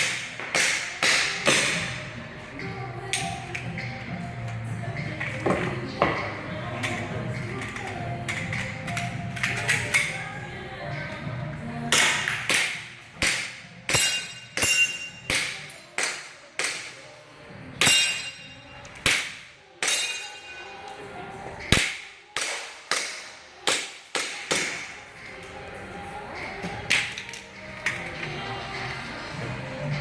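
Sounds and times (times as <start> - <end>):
short metallic ring: 13.9 - 15.3.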